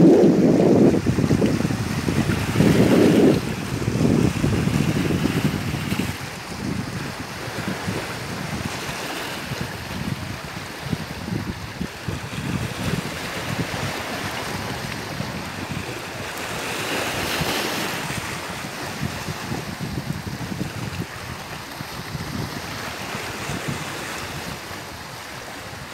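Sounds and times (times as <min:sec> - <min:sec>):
sea waves washing onto shore: 0:00.0 - 0:25.9
wind buffeting microphone: 0:00.0 - 0:25.9.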